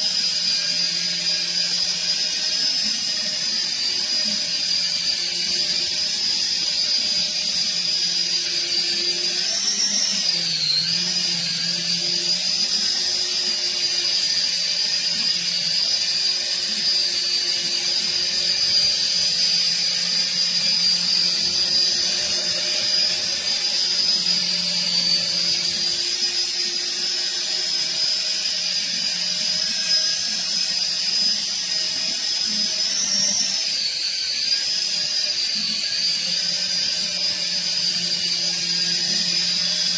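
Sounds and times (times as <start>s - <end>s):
helicopter rotors whining: 0.7s - 30.6s.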